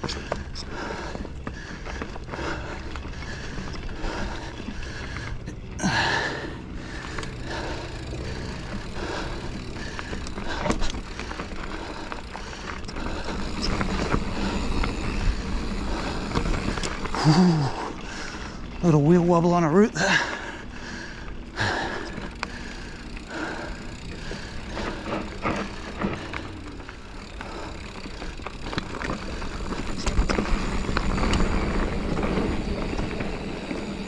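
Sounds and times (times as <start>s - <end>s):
bike rattling and clicking: 0.0s - 34.0s
loud breath: 0.3s - 18.6s, 20.0s - 26.6s
tyre noise on dirt: 7.0s - 18.0s, 22.0s - 34.0s.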